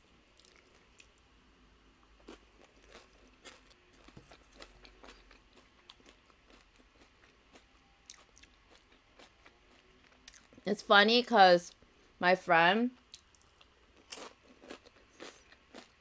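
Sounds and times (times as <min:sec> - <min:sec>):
chewing crunchy chips: 0:00.2 - 0:01.2, 0:02.1 - 0:10.7, 0:13.0 - 0:16.0.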